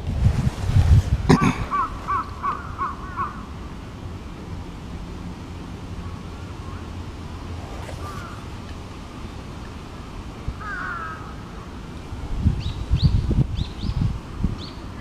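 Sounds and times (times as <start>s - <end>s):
wind buffeting microphone: 0.0s - 4.2s, 7.3s - 15.0s
crows cawing: 1.3s - 3.5s, 10.6s - 11.7s.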